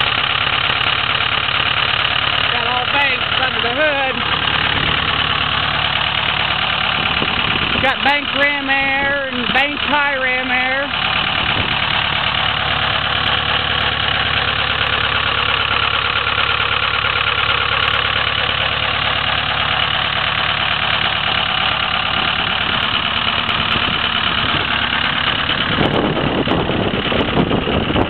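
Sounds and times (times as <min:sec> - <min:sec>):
diesel engine idling: 0:00.0 - 0:28.0
wind noise on microphone: 0:07.0 - 0:08.0, 0:11.4 - 0:11.8, 0:25.4 - 0:28.0.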